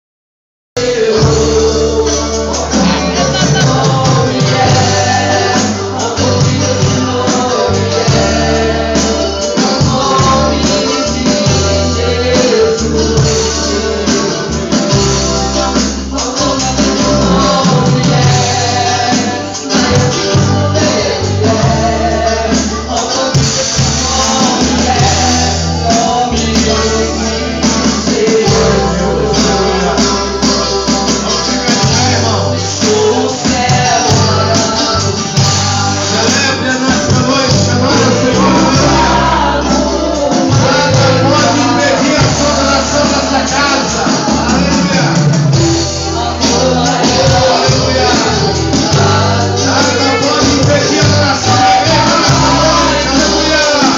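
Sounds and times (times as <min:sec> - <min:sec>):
held bass notes: 0:00.8 - 0:53.9
percussion beat: 0:00.8 - 0:53.9
person singing: 0:00.8 - 0:53.9
worship band playing: 0:00.8 - 0:53.9.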